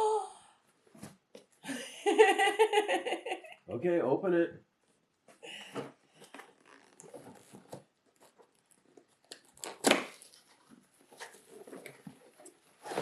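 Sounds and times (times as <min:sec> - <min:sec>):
sharp packaging rip: 0:09.3 - 0:10.3.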